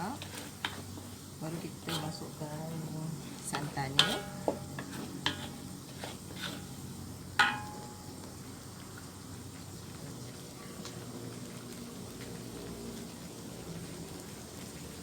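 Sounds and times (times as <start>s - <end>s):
utensil scraping a pot: 0.0s - 7.9s
paste sizzling and simmering: 0.0s - 15.0s
loud ringing clank: 7.4s - 8.0s.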